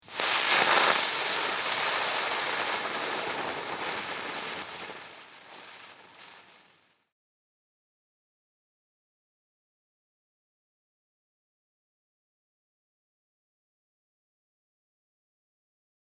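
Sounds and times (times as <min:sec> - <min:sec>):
firework fountain hissing crackle: 0:00.0 - 0:07.1.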